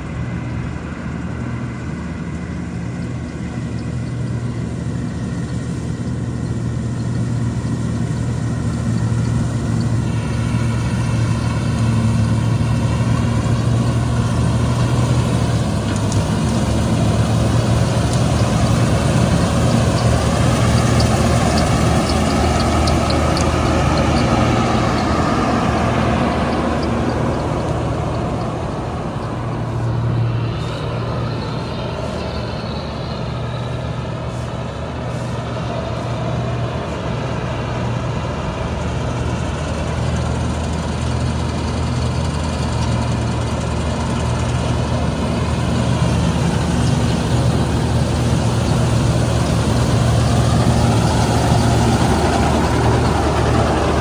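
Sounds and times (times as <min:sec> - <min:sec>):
combine harvester diesel engine: 0:00.0 - 0:54.0.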